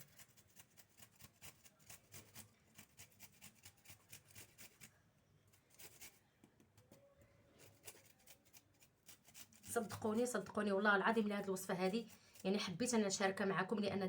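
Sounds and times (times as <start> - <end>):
ginger grated on hand grater: 0.0 - 4.9, 7.6 - 10.5.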